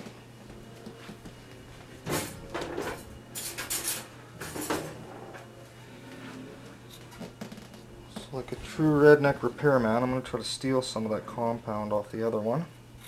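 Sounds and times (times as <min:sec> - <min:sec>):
faint steady hum: 0:00.0 - 0:13.0
small hard parts scraping and clattering: 0:02.1 - 0:05.4.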